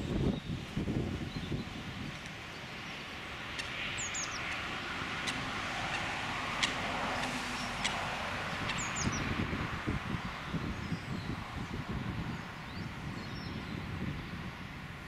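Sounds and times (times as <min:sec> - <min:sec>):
bird chirping: 0:02.5 - 0:04.6, 0:08.6 - 0:09.4
distant vehicle passing: 0:02.5 - 0:13.1.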